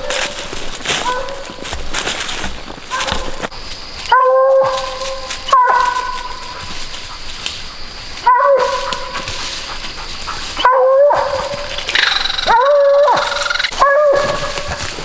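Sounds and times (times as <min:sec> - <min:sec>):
hound barking: 0:00.0 - 0:01.6, 0:02.9 - 0:15.0.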